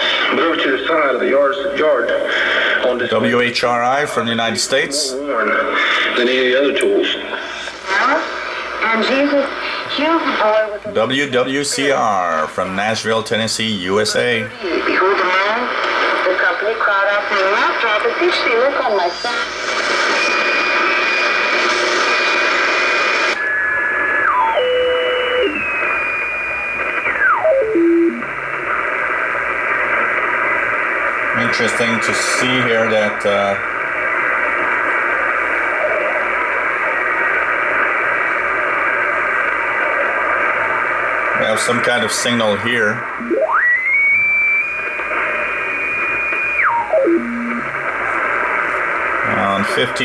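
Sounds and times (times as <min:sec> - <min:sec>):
radio static hiss: 0:00.0 - 0:50.0
radio whistle tones: 0:14.2 - 0:38.0, 0:38.6 - 0:50.0.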